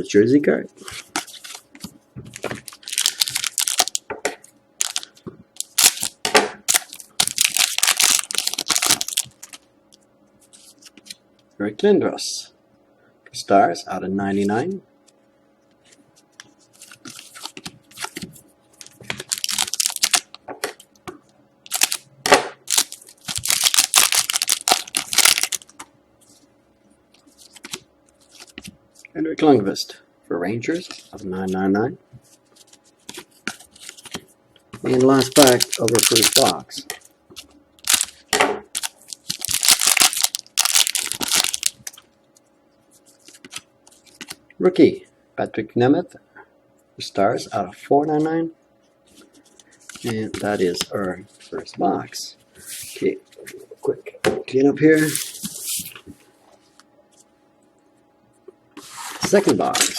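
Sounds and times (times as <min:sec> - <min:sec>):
cards and wrapper rustling: 0:02.3 - 0:04.0, 0:04.8 - 0:09.6, 0:16.7 - 0:20.3, 0:21.7 - 0:22.0, 0:22.7 - 0:26.4, 0:34.8 - 0:36.7, 0:37.4 - 0:42.0.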